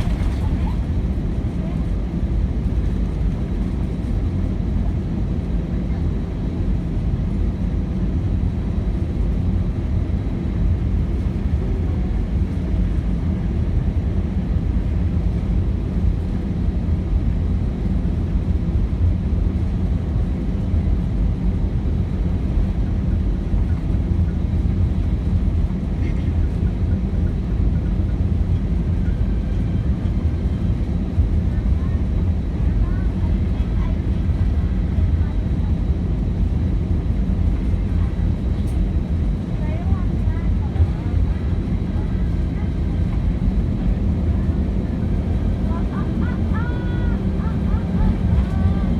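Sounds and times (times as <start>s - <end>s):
cabin airflow: 0.0s - 3.8s, 38.6s - 48.9s
jet engines low rumble: 0.0s - 48.9s.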